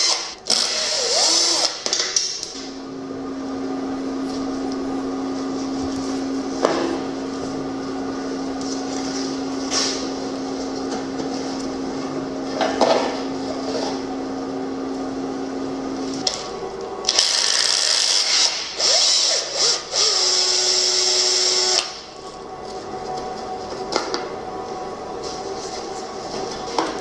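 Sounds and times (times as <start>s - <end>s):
low motor hum: 2.4s - 27.0s.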